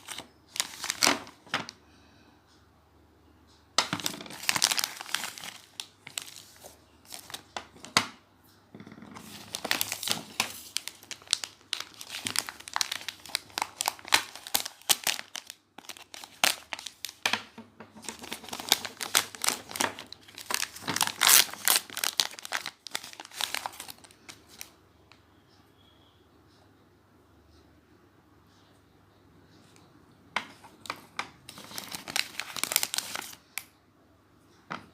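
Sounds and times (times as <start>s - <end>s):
packaging crinkling: 0.0s - 1.8s, 3.8s - 8.0s, 9.2s - 24.7s, 30.8s - 33.7s.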